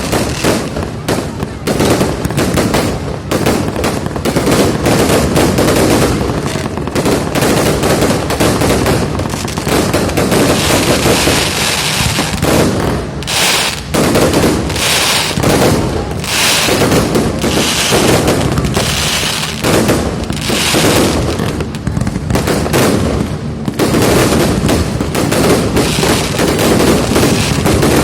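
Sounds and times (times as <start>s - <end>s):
fireworks crackling hisses: 0.0s - 28.0s
fireworks cracks and bangs: 0.0s - 28.0s.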